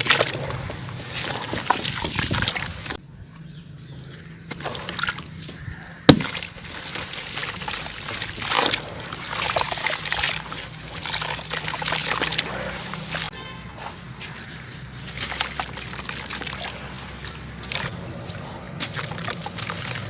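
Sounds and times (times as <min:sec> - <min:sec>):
sand chunks crumbling in water: 0:00.0 - 0:03.0, 0:04.5 - 0:13.4, 0:18.8 - 0:20.0.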